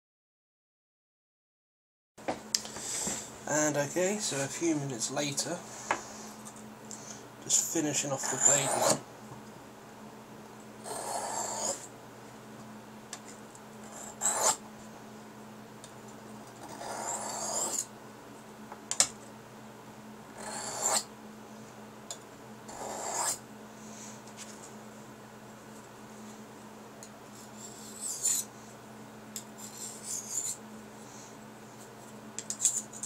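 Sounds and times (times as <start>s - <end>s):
knife scraping on sharpening stone: 8.2s - 9.0s, 10.9s - 11.8s, 13.9s - 14.6s, 16.7s - 17.8s, 20.4s - 21.0s, 22.7s - 23.4s, 27.6s - 28.5s, 29.6s - 30.6s.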